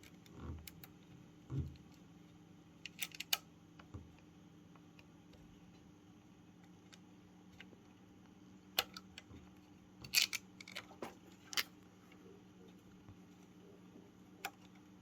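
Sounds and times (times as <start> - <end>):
faint low hum: 0.0 - 15.0
plastic and metal parts clicking: 2.9 - 3.4, 10.0 - 11.7.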